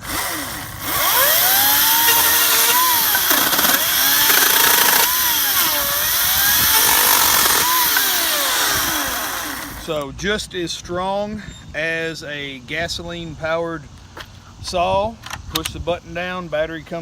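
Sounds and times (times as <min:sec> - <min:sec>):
battery chainsaw cutting: 0:00.0 - 0:10.0.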